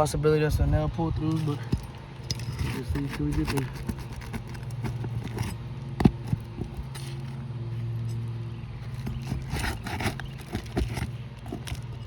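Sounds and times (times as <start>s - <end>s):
steady low hum: 0.0s - 12.0s
roof tool scraping shingles: 2.4s - 7.2s, 8.9s - 12.0s.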